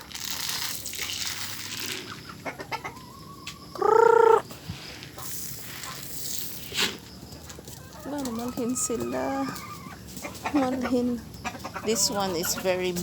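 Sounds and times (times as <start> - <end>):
chickens clucking: 1.8 - 13.0
loud drawn-out chicken call: 3.7 - 4.5.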